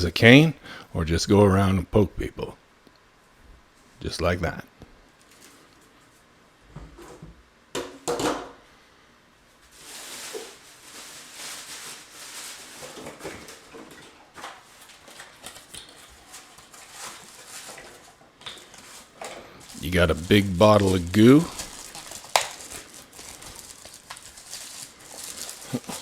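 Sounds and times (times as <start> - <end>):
plastic packaging rustling: 9.6 - 26.0.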